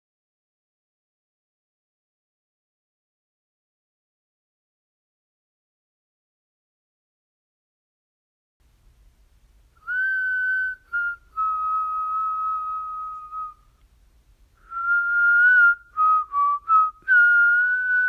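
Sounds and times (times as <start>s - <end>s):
person whistling a slow tune: 9.8s - 13.8s, 14.6s - 18.0s.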